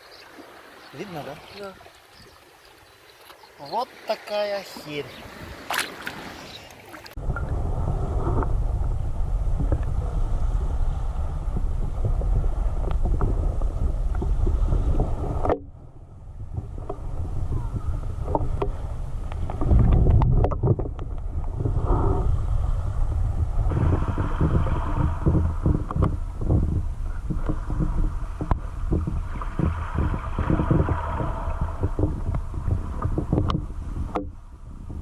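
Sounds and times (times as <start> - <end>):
wind buffeting microphone: 4.8 - 35.0.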